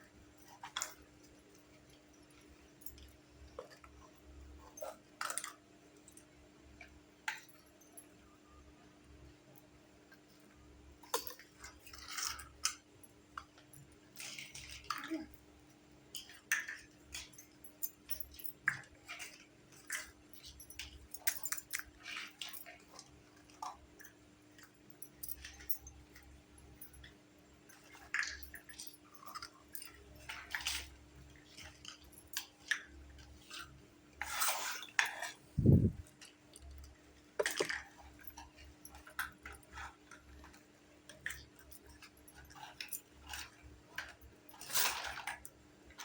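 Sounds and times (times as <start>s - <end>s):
faint steady hum: 0.0s - 46.0s
toy kitchen pieces clicking and tapping: 11.0s - 15.4s, 16.0s - 33.8s, 36.1s - 46.0s.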